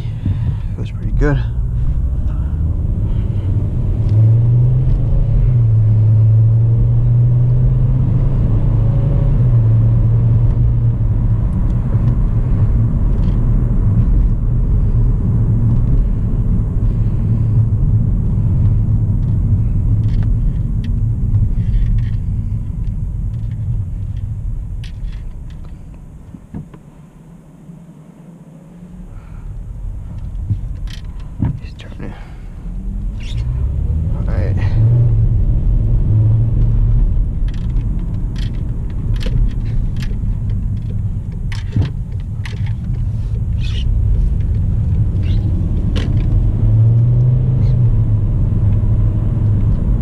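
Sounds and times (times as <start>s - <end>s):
car engine and road rumble: 0.0s - 50.0s.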